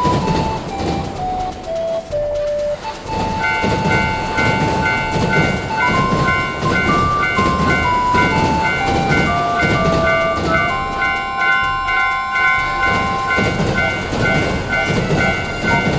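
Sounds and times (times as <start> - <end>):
plinking melody: 0.0 - 15.9
railroad crossing bell ringing: 0.0 - 15.9
train rumble: 0.0 - 15.9.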